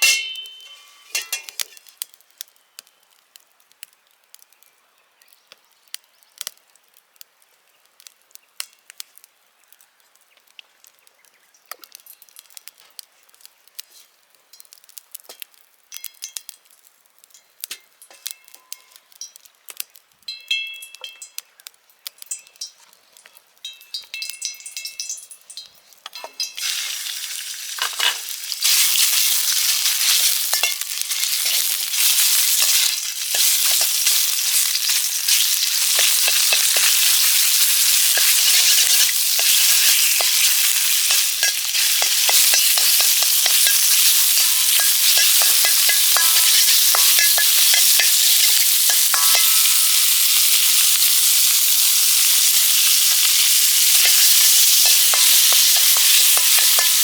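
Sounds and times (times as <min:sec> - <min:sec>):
food sizzling in a wok: 0:00.0 - 0:02.4, 0:26.1 - 0:57.0
spatula scraping and clicking: 0:28.0 - 0:49.6, 0:53.8 - 0:57.0.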